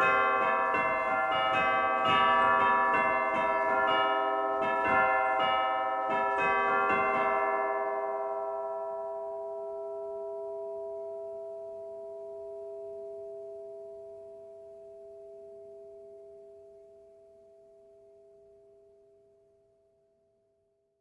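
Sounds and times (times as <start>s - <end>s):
church bell ringing hum: 0.0s - 16.7s.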